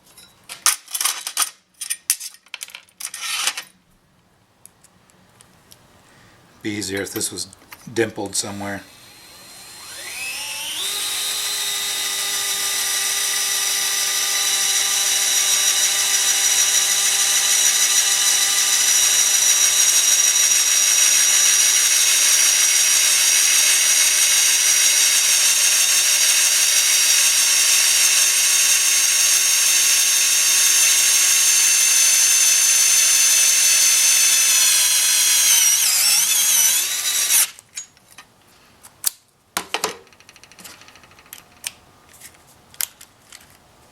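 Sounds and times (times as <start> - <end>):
cordless screwdriver whining: 8.6 - 37.6.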